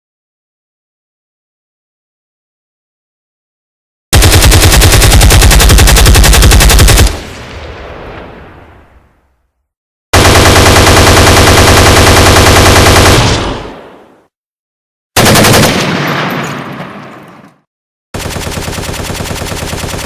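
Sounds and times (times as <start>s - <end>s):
machine-gun fire: 4.1s - 7.8s, 10.2s - 14.0s, 15.2s - 17.3s, 18.2s - 20.0s.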